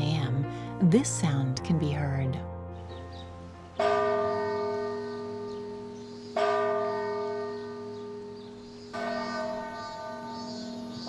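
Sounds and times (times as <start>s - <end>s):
large bell tolling: 3.8s - 10.8s.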